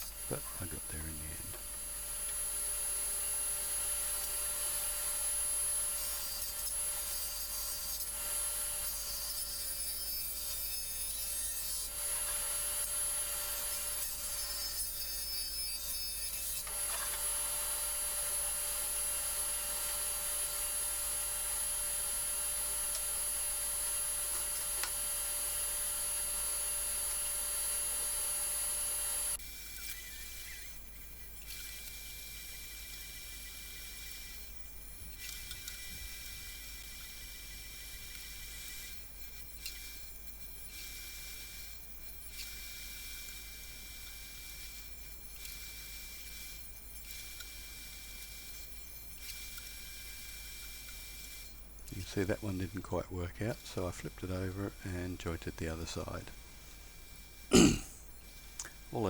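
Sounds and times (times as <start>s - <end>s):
table saw cutting a board: 0.0s - 30.7s.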